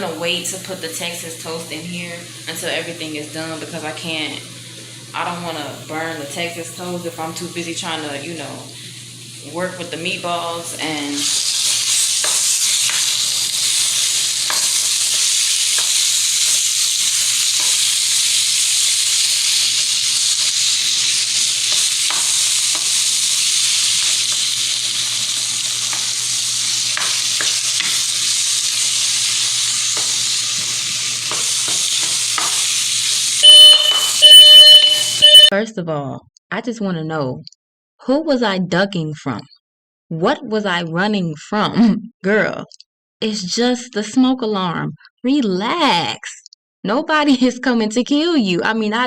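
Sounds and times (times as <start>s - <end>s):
food sizzling in a frying pan: 0.0s - 35.3s
smoke alarm beeping: 33.4s - 35.5s.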